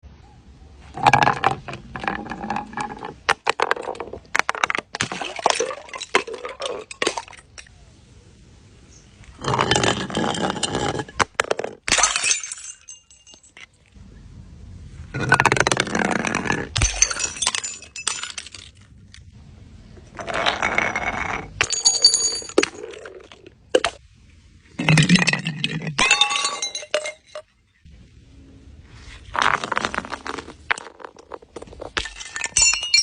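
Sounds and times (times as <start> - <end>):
glass crunching and clinking: 1.0 - 7.7, 9.4 - 13.9, 15.2 - 19.3, 20.2 - 24.0, 24.8 - 27.6, 29.5 - 33.0.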